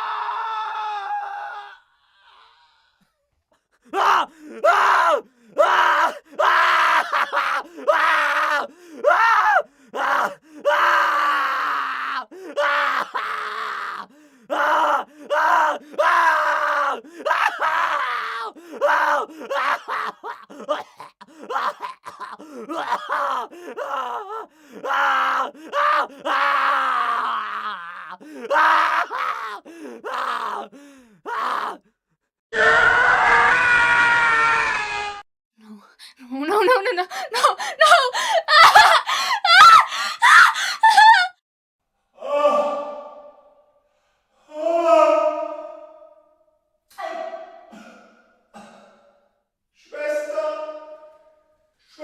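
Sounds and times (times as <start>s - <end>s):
man screaming and groaning: 0.0s - 2.7s, 3.9s - 31.9s, 36.5s - 41.4s
man gasping: 3.8s - 5.6s, 8.7s - 10.7s, 14.1s - 16.0s, 18.5s - 19.5s, 20.4s - 22.8s, 23.5s - 23.8s, 24.4s - 24.8s, 28.2s - 28.5s, 29.6s - 30.0s, 30.7s - 31.3s, 35.8s - 41.0s.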